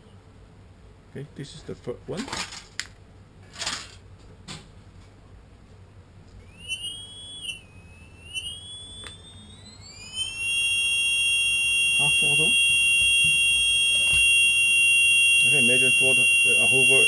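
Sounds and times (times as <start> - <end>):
drone motor high whine: 6.4 - 17.0.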